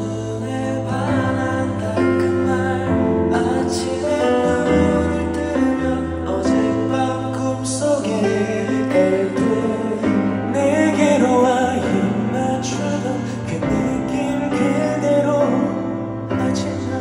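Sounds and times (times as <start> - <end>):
bass: 0.0 - 17.0
keyboard chords: 0.0 - 17.0
person singing: 0.0 - 17.0.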